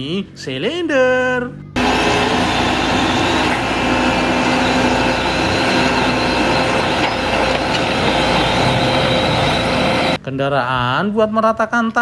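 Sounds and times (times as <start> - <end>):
heavy vehicle engine running: 1.8 - 10.2.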